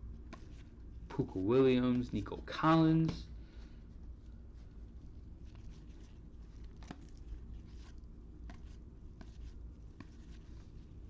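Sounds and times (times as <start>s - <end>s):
cards sliding swishes: 0.3s - 0.8s, 4.0s - 11.0s.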